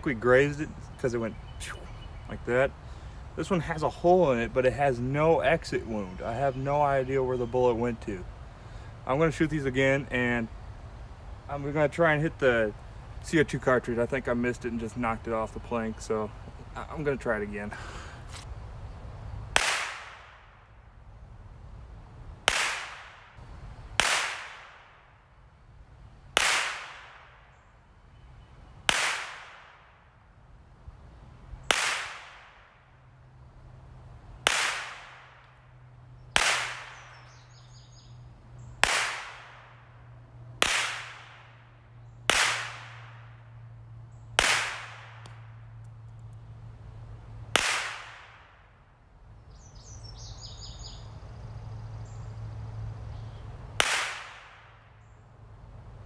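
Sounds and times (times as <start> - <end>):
rifle shots echoing: 24.0 - 25.1, 44.4 - 45.5, 47.5 - 48.6, 53.8 - 54.9.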